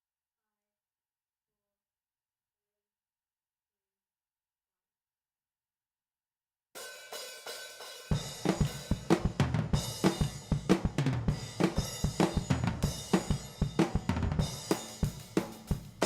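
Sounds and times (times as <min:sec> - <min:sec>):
acoustic drum kit groove: 0:06.8 - 0:16.0.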